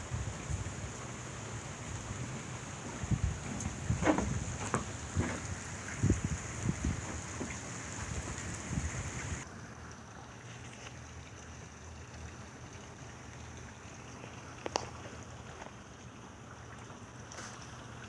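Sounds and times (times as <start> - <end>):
steady rain falling: 0.0 - 9.4.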